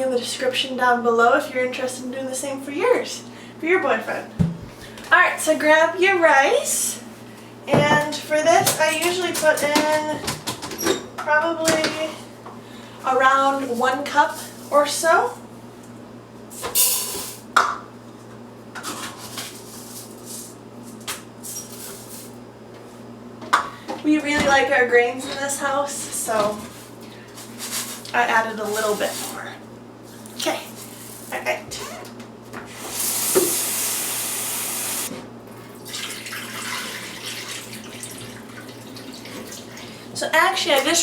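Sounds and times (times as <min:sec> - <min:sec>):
kitchen tap running water: 0:32.7 - 0:35.1, 0:35.8 - 0:40.0.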